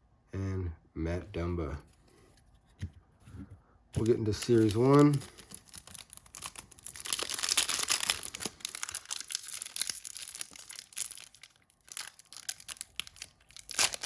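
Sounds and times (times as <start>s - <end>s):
card pack wrapper tearing: 4.0s - 14.0s.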